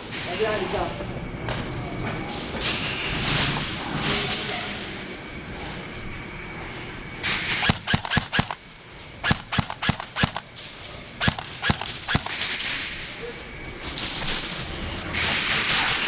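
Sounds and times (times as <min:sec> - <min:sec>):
airsoft gun shots: 0:07.6 - 0:08.6, 0:09.2 - 0:10.5, 0:11.2 - 0:12.5.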